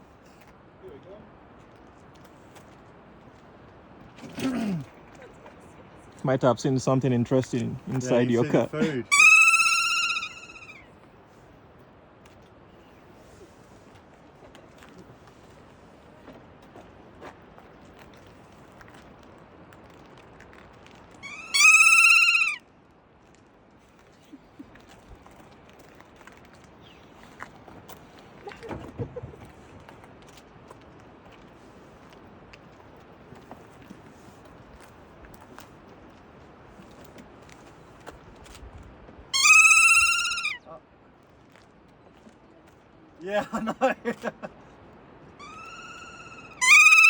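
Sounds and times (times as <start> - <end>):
bird shrieking: 9.0 - 10.9, 21.2 - 22.6, 39.4 - 40.6, 45.4 - 47.0
parrot wavering call: 9.0 - 10.9, 21.2 - 22.6, 39.4 - 40.6, 45.4 - 47.0.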